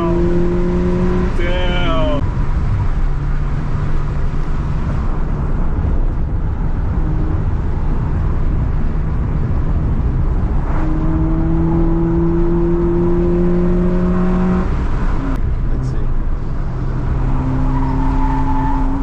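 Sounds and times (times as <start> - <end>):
road and tyre noise: 0.0 - 19.0.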